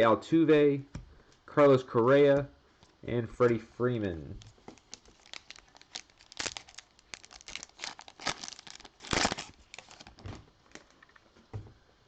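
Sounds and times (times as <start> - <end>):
wrapper crinkling: 4.4 - 11.0.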